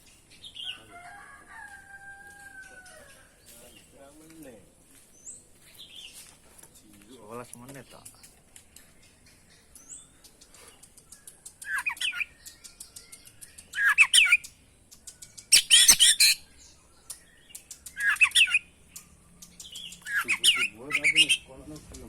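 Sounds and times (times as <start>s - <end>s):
quick clicking bird notes: 7.9s - 16.4s, 17.1s - 22.0s
bird warbling: 13.1s - 14.5s, 15.3s - 16.5s, 17.9s - 21.5s.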